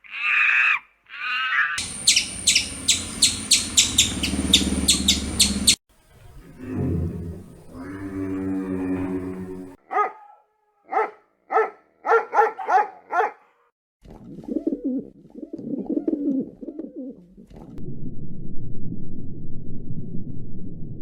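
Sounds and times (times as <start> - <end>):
held pitched animal call: 0.0 - 5.8
low warbling animal sounds: 1.8 - 9.8
dog barking: 9.8 - 13.7.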